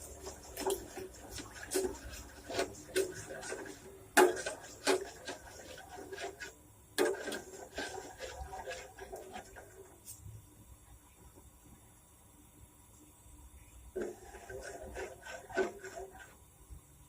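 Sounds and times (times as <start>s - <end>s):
utensil scraping and knocking cookware: 0.0s - 9.4s, 14.0s - 16.3s.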